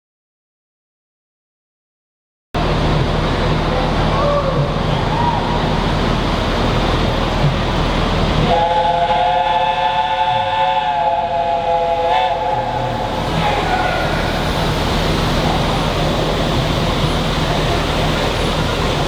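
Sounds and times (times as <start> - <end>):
steam hissing: 2.6 - 19.0
steam locomotive whistle: 8.4 - 14.7.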